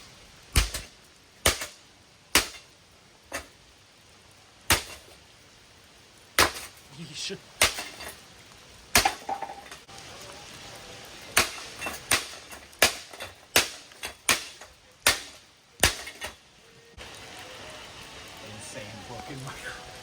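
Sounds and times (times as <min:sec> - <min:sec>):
hard blows smashing metal: 0:00.5 - 0:02.7, 0:04.7 - 0:05.2, 0:06.4 - 0:06.9, 0:07.6 - 0:08.2, 0:08.9 - 0:09.8, 0:11.3 - 0:16.4.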